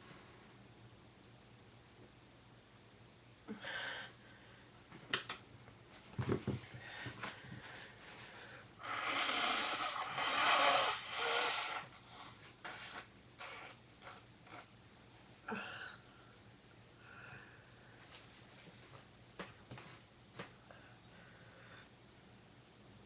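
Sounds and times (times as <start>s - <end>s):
person blowing nose: 8.8s - 14.7s.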